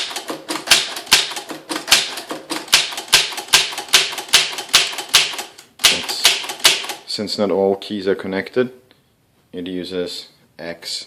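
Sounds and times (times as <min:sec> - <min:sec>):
typewriter keys striking: 0:00.0 - 0:07.0.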